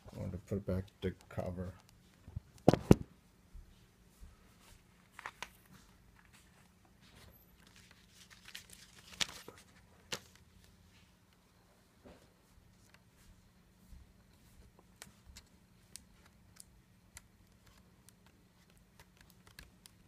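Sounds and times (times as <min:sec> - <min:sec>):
cover sheet rustling and clicks: 0:05.0 - 0:10.8, 0:14.7 - 0:20.0.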